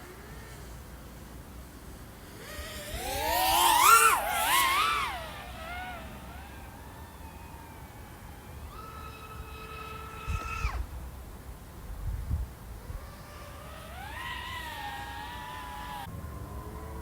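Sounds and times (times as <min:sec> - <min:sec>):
drone motors whining: 0:02.1 - 0:11.0, 0:12.8 - 0:17.0.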